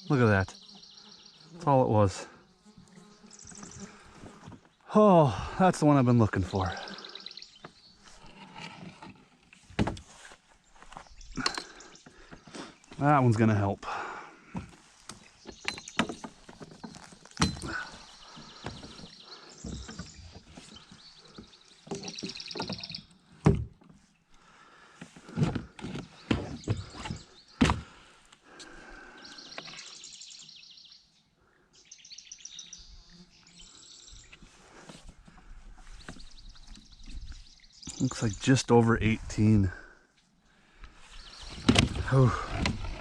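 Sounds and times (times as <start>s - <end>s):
birds singing high trills: 0.0s - 4.9s, 6.6s - 8.4s, 10.7s - 13.0s, 15.2s - 23.2s, 25.9s - 27.6s, 28.7s - 34.5s, 35.9s - 38.7s, 41.0s - 42.2s
knocks and thuds: 25.3s - 28.0s.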